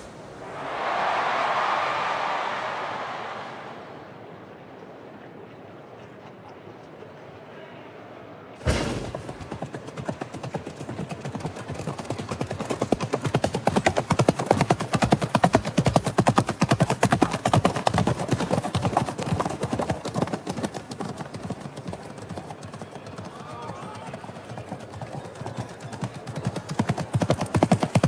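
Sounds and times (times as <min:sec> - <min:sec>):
loud bang: 0:08.6 - 0:09.6
hooves galloping: 0:08.6 - 0:28.0.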